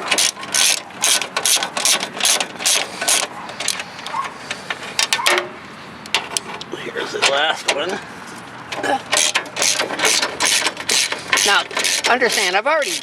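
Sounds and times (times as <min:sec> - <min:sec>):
ratchet wrench clicking: 0:00.1 - 0:04.2, 0:09.1 - 0:13.0.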